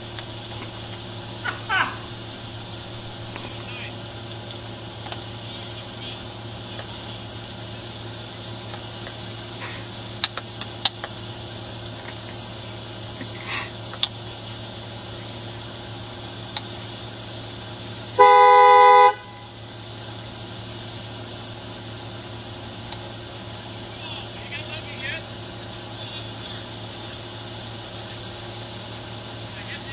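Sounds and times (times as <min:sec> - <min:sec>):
steady low hum: 0:00.0 - 0:29.9
car horn blast: 0:18.2 - 0:19.5.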